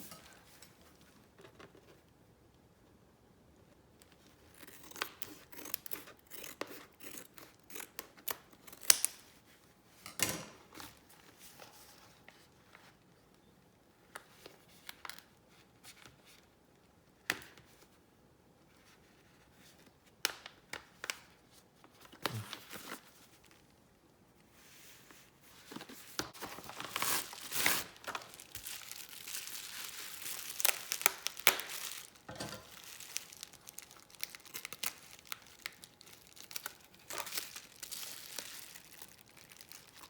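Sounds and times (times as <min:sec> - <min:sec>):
packaging crinkling and tearing: 0:25.7 - 0:40.0.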